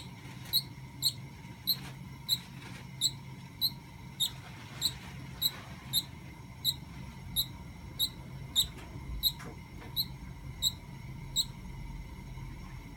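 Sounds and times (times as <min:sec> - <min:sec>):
bird squeaking: 0:00.0 - 0:02.4, 0:07.4 - 0:09.4.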